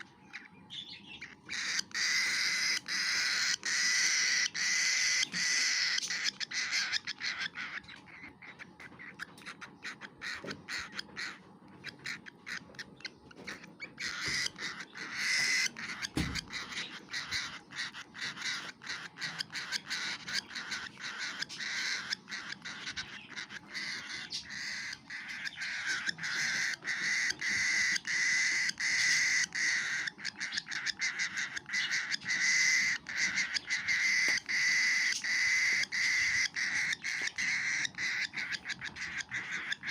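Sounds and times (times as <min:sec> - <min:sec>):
baby cockatiel begging calls: 0:00.0 - 0:39.9.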